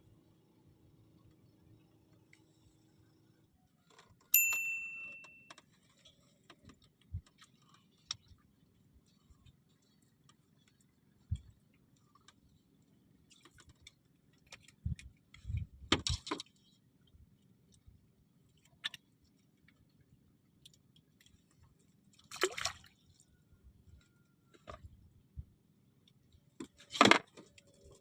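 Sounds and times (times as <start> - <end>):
water sloshing and splashing: 5.8 - 25.0.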